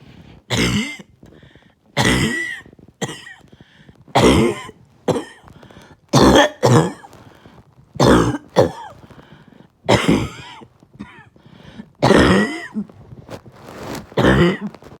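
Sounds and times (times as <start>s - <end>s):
person coughing hard: 0.5s - 1.1s, 2.0s - 3.5s, 4.1s - 5.5s, 6.1s - 7.1s, 8.0s - 9.1s, 9.9s - 11.4s, 12.0s - 12.9s, 14.2s - 14.8s.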